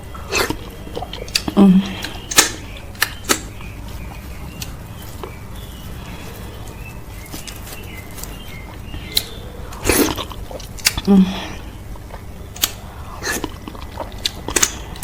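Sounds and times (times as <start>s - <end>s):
steady low hum: 0.0s - 15.0s
wet mouth clicks eating: 0.4s - 3.7s, 9.0s - 11.1s, 12.0s - 15.0s.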